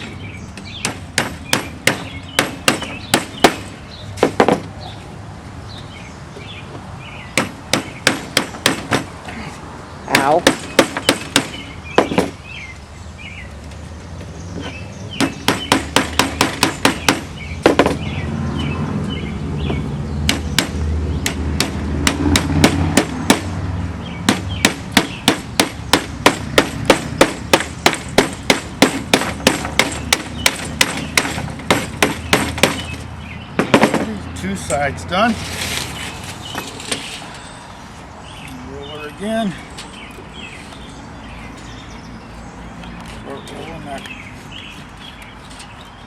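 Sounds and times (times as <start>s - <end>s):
rapid sharp metal taps: 15.2s - 18.0s, 20.3s - 23.5s, 24.3s - 33.0s.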